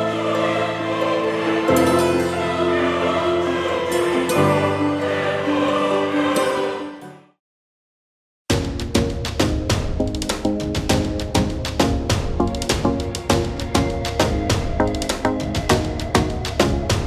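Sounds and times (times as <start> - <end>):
choir-like chords: 0.0 - 7.4, 12.4 - 17.0.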